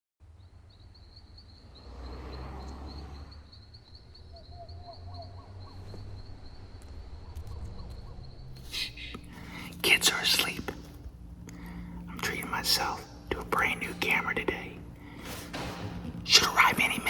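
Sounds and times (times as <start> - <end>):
insect chirping trill: 0.3 - 17.0
low rumble: 6.1 - 17.0.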